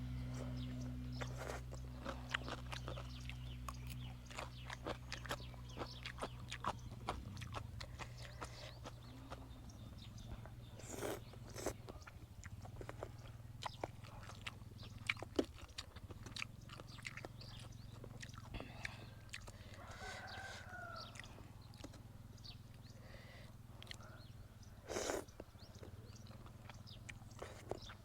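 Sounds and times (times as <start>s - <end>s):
steady low hum: 0.0s - 15.2s
crunching and chewing: 0.2s - 28.0s.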